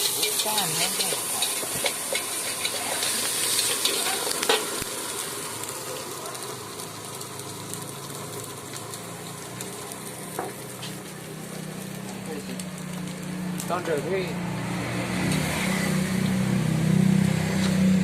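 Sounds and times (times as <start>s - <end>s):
spatula scraping a pan: 0.0s - 4.8s
rice sizzling in a wok: 0.0s - 18.0s.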